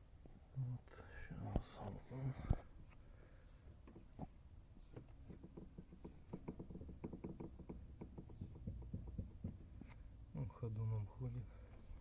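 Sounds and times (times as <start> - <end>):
heater core knocking in housing: 5.3 - 9.8.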